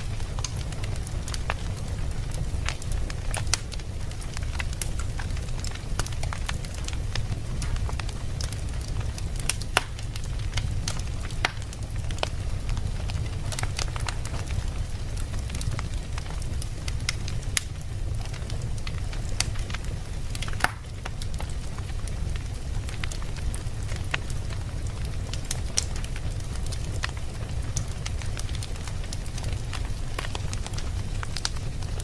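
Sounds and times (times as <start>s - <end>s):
low fire rumble: 0.0s - 32.0s
wood fire crackling and popping: 0.0s - 32.0s.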